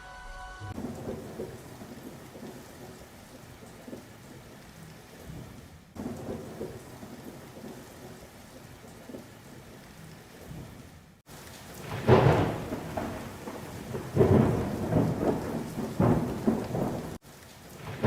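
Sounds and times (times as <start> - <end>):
steady rain: 0.7 - 18.0
low rolling thunder: 0.8 - 4.4, 5.2 - 9.4, 11.8 - 17.2, 17.8 - 18.0.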